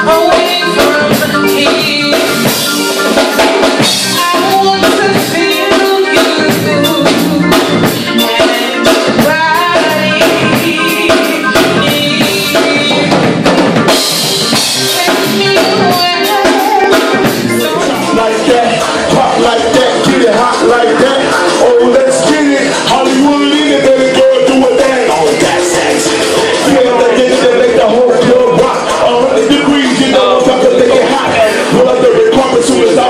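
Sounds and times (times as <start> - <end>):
drum kit beat: 0.0 - 33.0
melodic instrumental lines: 0.0 - 33.0.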